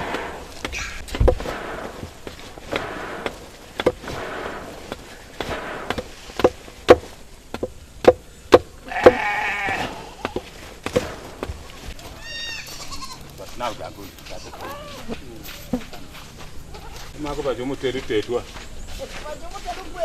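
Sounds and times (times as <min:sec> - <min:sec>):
goat bleating: 0:08.8 - 0:10.4, 0:12.0 - 0:13.4, 0:16.7 - 0:17.1.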